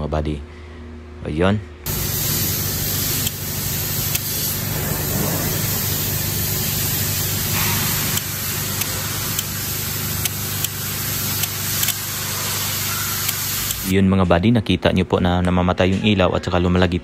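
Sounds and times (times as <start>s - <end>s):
loud steady hiss: 1.9s - 13.9s
relay clicking: 10.2s - 12.1s, 13.2s - 13.9s.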